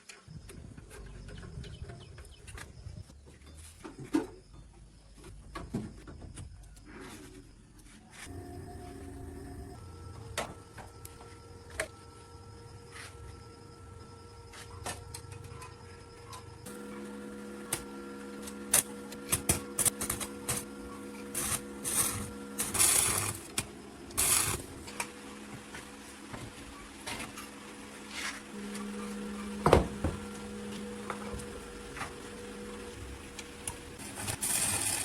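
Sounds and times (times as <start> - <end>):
low machine hum: 8.1 - 35.0
short hissing bursts: 34.0 - 35.0.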